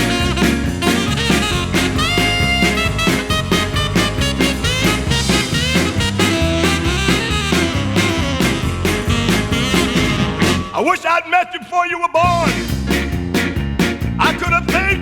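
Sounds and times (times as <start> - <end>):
stepping bass line: 0.0 - 10.8, 12.2 - 15.0
saxophone line: 0.0 - 11.2
drum kit: 0.0 - 15.0.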